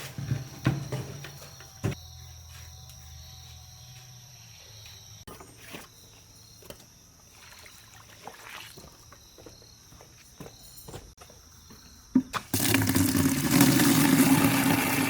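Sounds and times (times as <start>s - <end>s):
high-pitched insect drone: 0.2s - 5.3s.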